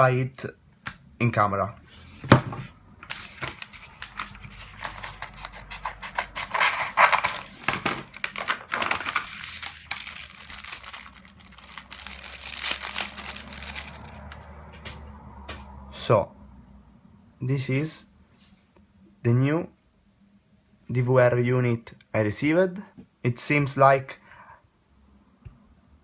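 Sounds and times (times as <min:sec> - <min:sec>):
packaging tearing and crinkling: 0:03.1 - 0:14.4.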